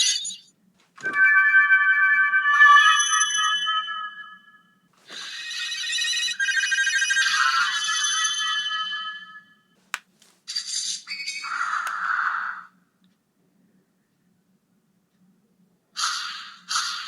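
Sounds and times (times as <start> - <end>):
toy electronic chimes: 1.1 - 4.4, 5.3 - 9.5.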